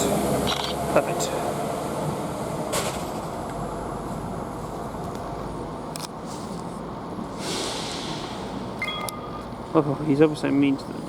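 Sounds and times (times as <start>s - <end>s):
train engines idling: 0.0s - 11.0s
hiss: 7.3s - 8.8s.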